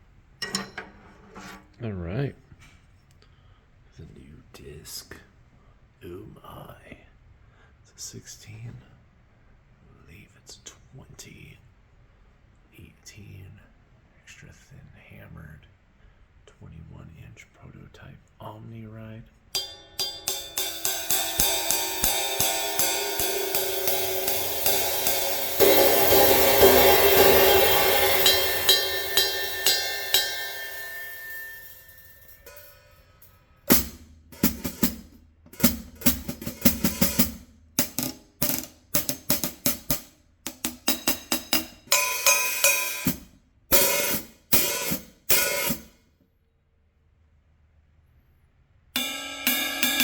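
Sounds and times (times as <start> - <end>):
cymbal crash: 19.6 - 45.9, 49.0 - 50.0
short cymbal strikes: 19.6 - 45.9, 49.0 - 50.0.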